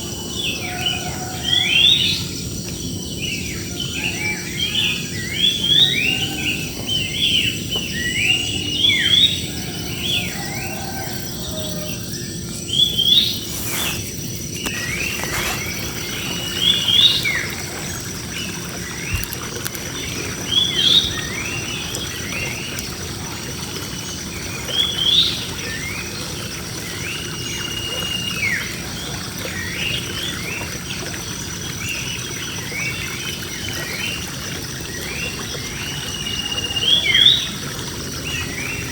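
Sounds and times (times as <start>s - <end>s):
birds chirping: 5.2s - 22.5s.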